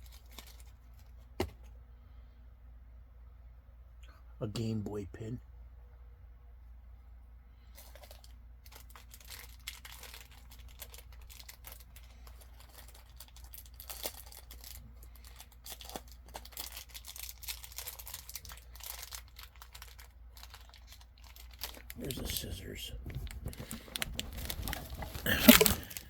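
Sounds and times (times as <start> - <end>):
plastic packaging crinkling and tearing: 0.0 - 1.1, 7.8 - 26.0.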